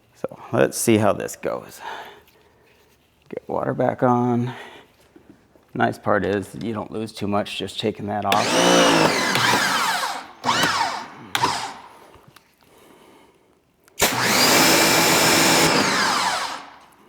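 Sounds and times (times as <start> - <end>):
pressure washer motor whining: 8.3 - 12.0, 14.0 - 17.0.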